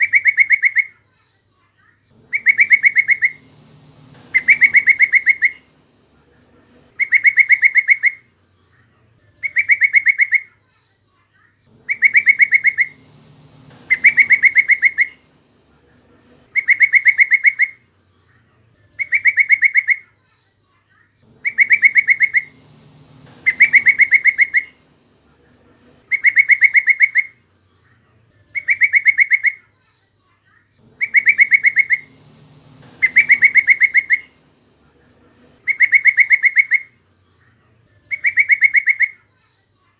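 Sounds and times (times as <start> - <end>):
bulbul calling: 0.0 - 0.9, 2.1 - 8.4, 9.4 - 10.5, 11.7 - 18.0, 19.0 - 20.0, 21.3 - 27.6, 28.5 - 29.6, 30.8 - 39.2.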